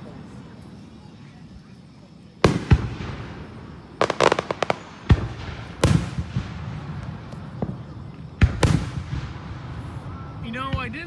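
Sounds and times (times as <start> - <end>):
fireworks booms: 2.3 - 11.0
fireworks crackling pops: 2.4 - 11.0.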